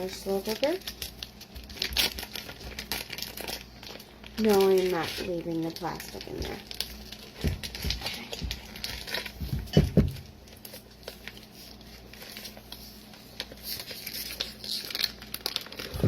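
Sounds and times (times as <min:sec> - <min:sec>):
plastic packaging crinkling: 0:00.0 - 0:16.0
dull thumps: 0:09.4 - 0:10.3.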